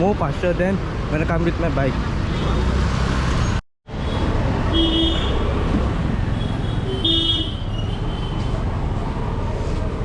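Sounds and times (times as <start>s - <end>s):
street traffic: 0.0s - 10.0s
vehicle horn honking: 6.8s - 7.7s.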